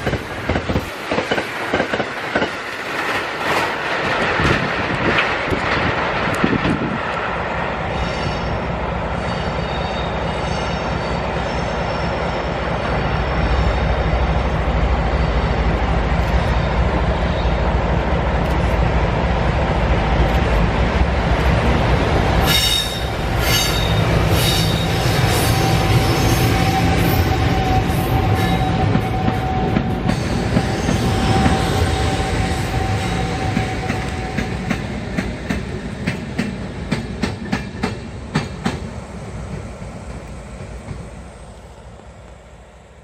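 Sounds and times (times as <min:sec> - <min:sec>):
train rolling past: 0:00.0 - 0:43.0
high wheel squeal: 0:22.4 - 0:34.4.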